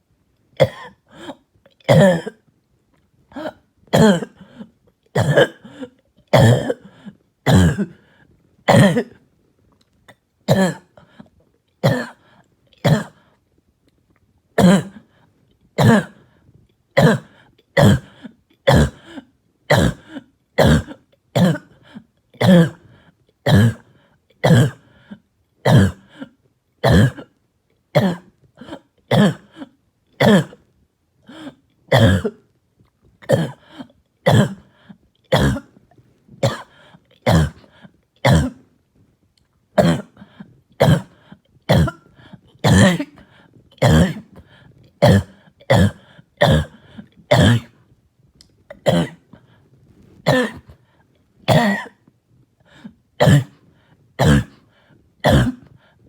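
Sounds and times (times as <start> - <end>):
person coughing: 0.6 - 2.4, 3.3 - 9.2, 10.1 - 13.4, 14.6 - 15.2, 15.8 - 16.4, 17.0 - 27.4, 28.0 - 30.6, 31.3 - 32.4, 33.2 - 38.7, 39.8 - 47.8, 48.7 - 49.6, 50.2 - 50.8, 51.5 - 52.1, 52.7 - 53.6, 54.2 - 55.8.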